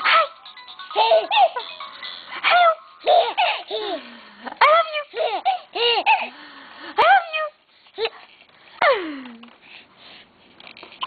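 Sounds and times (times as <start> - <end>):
baby giggling: 0.0 - 6.3.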